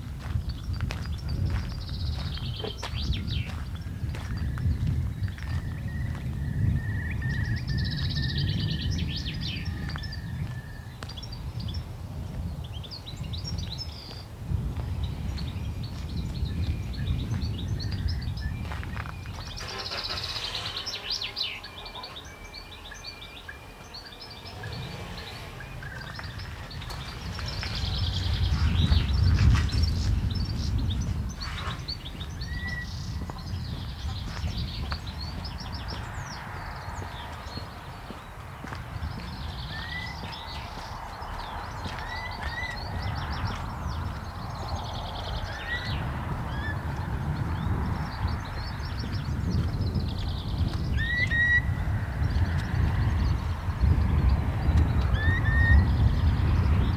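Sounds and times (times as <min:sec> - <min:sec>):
songbirds singing and chirping: 0:00.0 - 0:56.9
wind buffeting microphone: 0:00.0 - 0:56.9
bird trill: 0:15.6 - 0:36.9, 0:39.4 - 0:49.3, 0:49.9 - 0:52.3.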